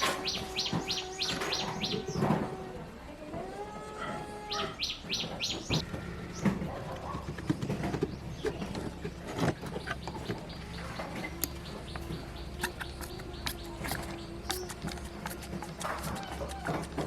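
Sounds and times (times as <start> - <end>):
birds chirping: 0.0 - 17.0
steady low hum: 0.0 - 17.0.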